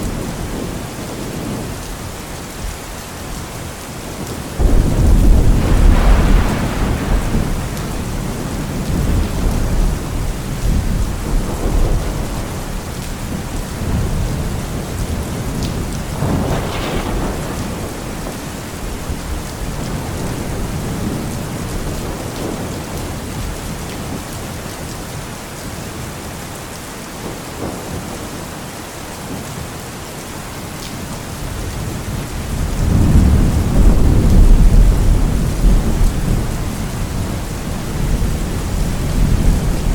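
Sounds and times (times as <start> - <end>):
steady rain: 0.0 - 39.9
rolling thunder: 4.1 - 24.3, 31.3 - 39.9
thunder clap: 4.6 - 23.5, 31.9 - 39.9.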